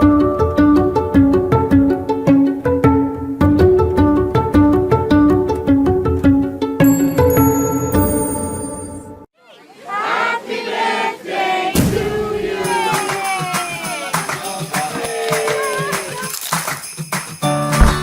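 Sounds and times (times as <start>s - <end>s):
background music: 0.0s - 9.3s
voices singing over music: 10.1s - 16.0s.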